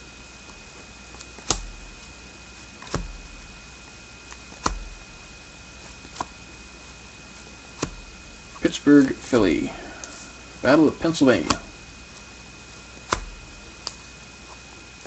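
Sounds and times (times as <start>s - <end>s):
cards tapping onto a table: 11.4s - 11.7s.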